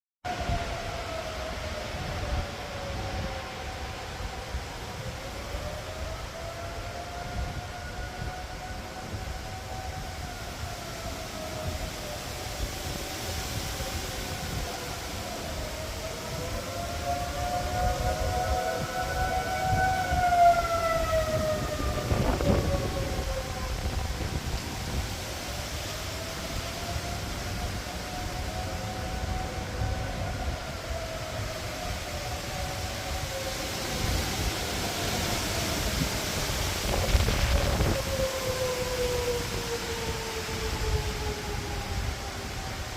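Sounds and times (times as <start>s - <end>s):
tornado siren wailing: 0.3s - 42.9s
wind and rain hiss: 0.3s - 42.9s.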